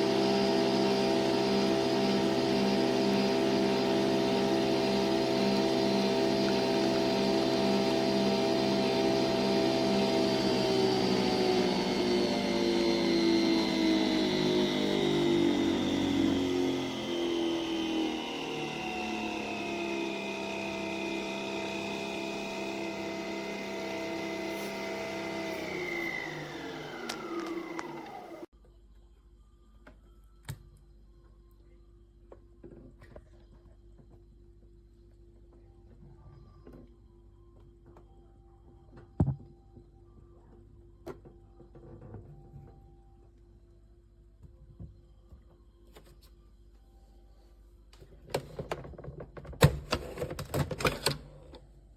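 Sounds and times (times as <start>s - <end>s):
coffee machine motor whirring: 0.0s - 28.5s
water pump whine: 0.0s - 28.5s.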